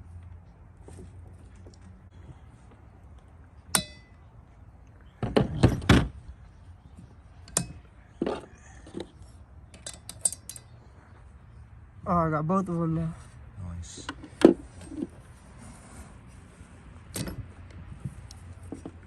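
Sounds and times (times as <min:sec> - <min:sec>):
ringing metal ding: 0:03.7 - 0:04.2
metal tools clinking: 0:09.7 - 0:10.8.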